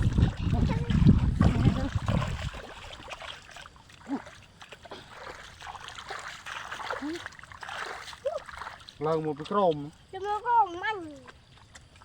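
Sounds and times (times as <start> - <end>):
faint water trickling: 0.0 - 12.0
shallow water splashing: 0.0 - 12.0.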